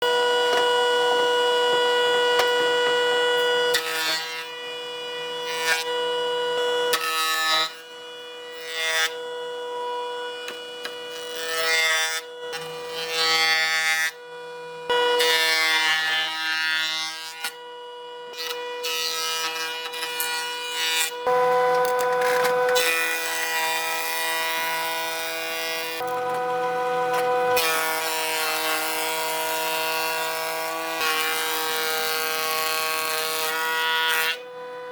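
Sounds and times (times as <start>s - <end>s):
power tool grinding wood: 18.3s - 34.9s.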